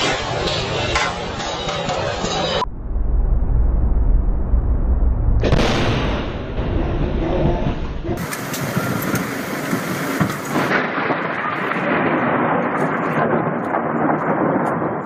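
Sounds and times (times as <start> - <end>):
thunder rumbling: 0.0 - 15.0
heavy rain hissing: 8.1 - 13.1.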